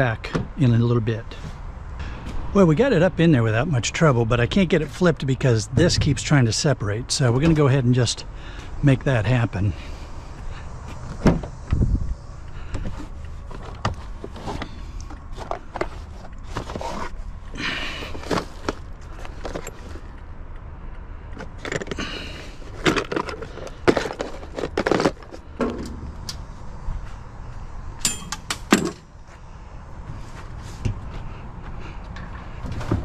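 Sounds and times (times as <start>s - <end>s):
metal scrap clanking in truck bed: 28.0s - 29.0s.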